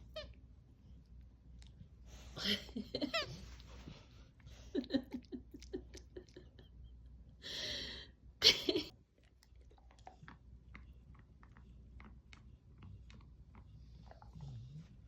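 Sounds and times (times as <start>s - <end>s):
dog chewing: 9.1s - 15.0s.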